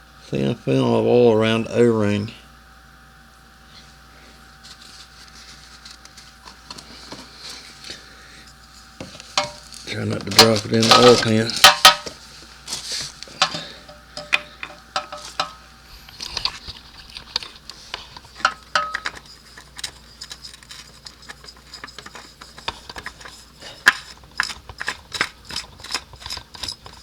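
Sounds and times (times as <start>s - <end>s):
metal clinks and taps: 9.4s - 9.7s, 10.4s - 12.2s, 13.4s - 15.6s, 18.4s - 19.2s.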